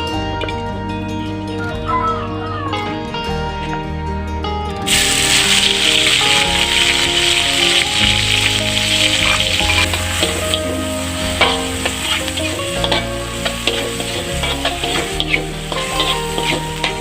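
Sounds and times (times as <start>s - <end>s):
food sizzling in a pan: 4.9s - 17.0s
spatula scraping a pan: 8.8s - 17.0s.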